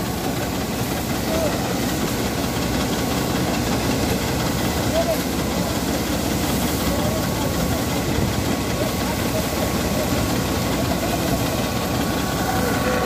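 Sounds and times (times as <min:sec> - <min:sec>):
engine running steadily: 0:00.0 - 0:13.0
faint voices: 0:04.7 - 0:13.0.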